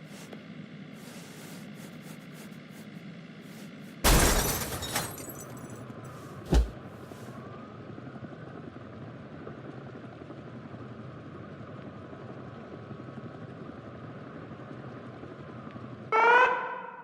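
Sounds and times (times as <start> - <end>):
loud crash: 4.0 - 5.6.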